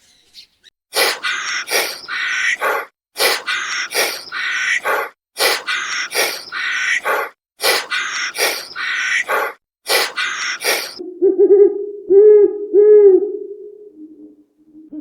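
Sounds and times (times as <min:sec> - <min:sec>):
harsh rasping animal calls: 0:00.9 - 0:11.0.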